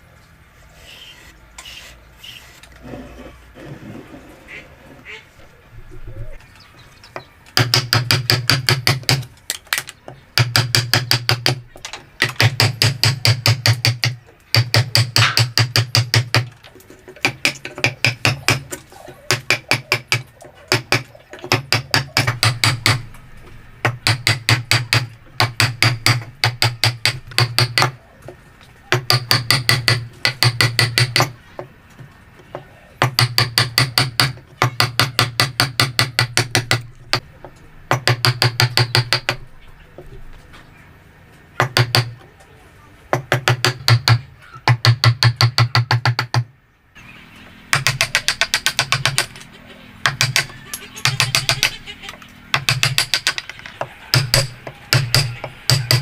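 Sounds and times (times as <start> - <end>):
rapid hammer blows: 52.5 - 56.0.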